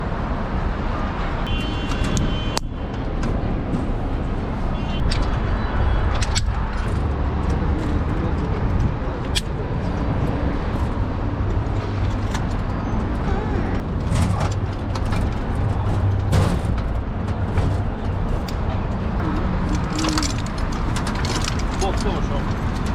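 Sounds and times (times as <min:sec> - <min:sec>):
low city rumble: 0:00.0 - 0:22.9.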